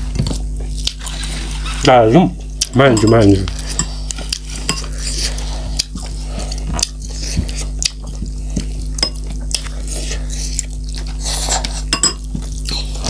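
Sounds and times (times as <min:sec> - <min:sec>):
low steady hum: 0:00.0 - 0:13.0
chewing: 0:00.2 - 0:01.8, 0:03.5 - 0:13.0.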